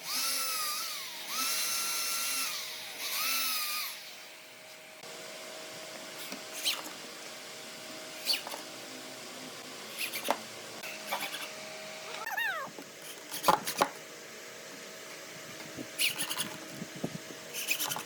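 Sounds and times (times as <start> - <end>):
short squeaky call: 12.1 - 12.7.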